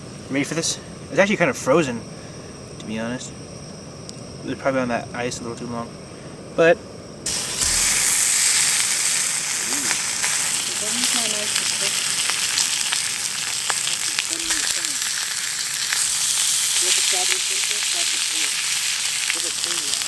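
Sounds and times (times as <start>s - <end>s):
sharp pops of searing meat: 7.3s - 20.0s
steak sizzling: 7.3s - 20.0s.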